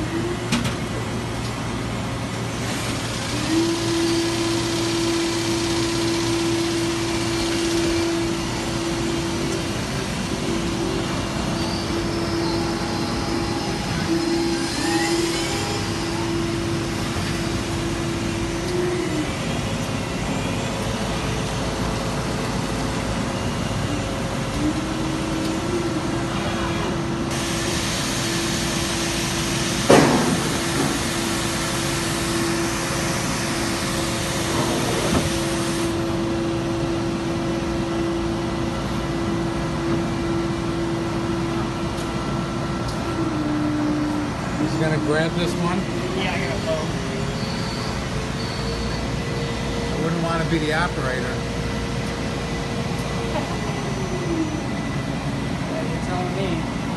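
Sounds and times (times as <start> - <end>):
machine mechanical hum: 0.0 - 56.9
rising whine: 0.0 - 56.9
steady machine tone: 0.0 - 56.9
hiss: 27.3 - 36.0
sharp clunk: 29.9 - 31.0.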